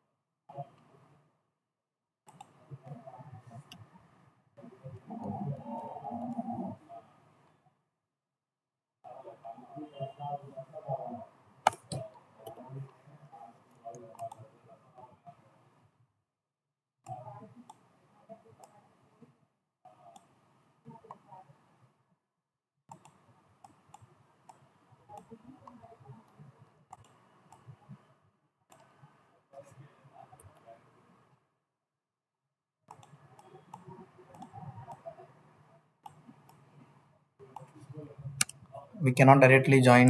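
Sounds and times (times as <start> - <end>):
faint room noise: 2.2 - 8.0, 22.9 - 31.8, 32.9 - 40.0
computer mouse clicking: 2.3 - 3.9, 11.6 - 13.0, 13.7 - 14.5, 17.0 - 18.8, 20.1 - 21.5, 22.9 - 28.0, 28.7 - 29.8, 32.9 - 35.4, 36.0 - 37.8.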